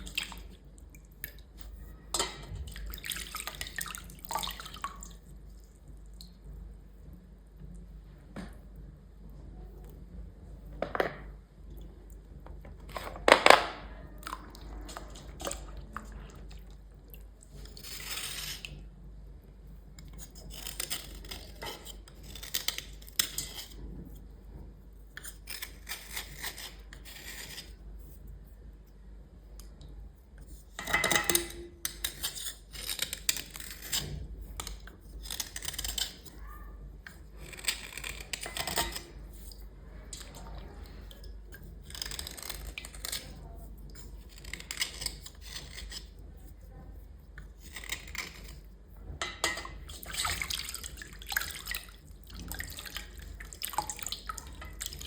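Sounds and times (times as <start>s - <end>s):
scraping and rubbing strokes: 17.4s - 18.8s.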